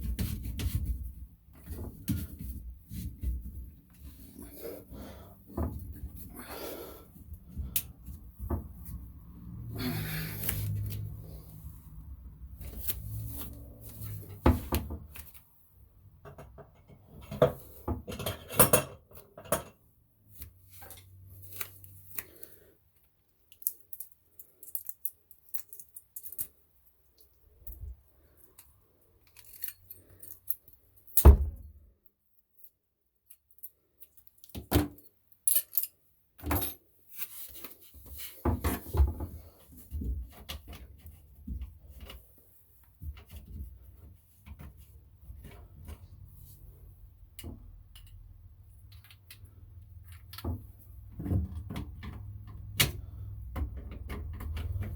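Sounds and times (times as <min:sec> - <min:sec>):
plumbing parts and tools clinking: 0:16.2 - 0:19.8, 0:27.2 - 0:31.2, 0:33.3 - 0:36.9.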